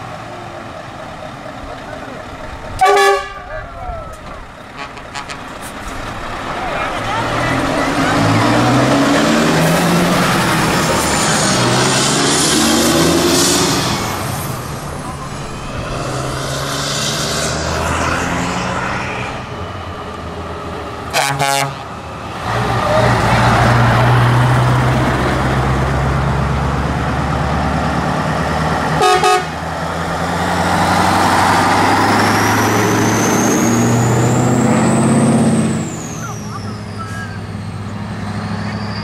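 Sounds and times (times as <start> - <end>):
diesel truck driving past: 0.0 - 39.0
truck horn blast: 2.8 - 3.5, 4.7 - 5.5, 21.1 - 21.9, 29.0 - 29.7
high rising whine: 7.8 - 20.6.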